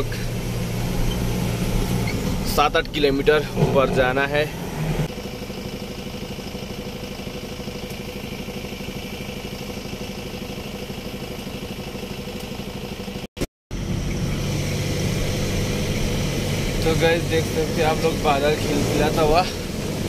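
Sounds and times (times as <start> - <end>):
truck diesel engine throbbing: 0.0 - 5.9, 13.7 - 20.0.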